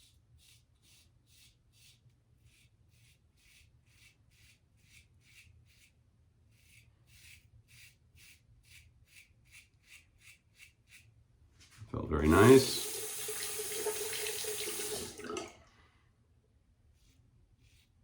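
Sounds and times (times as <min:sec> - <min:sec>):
razor shaving stubble: 0:00.4 - 0:11.1, 0:12.3 - 0:15.1.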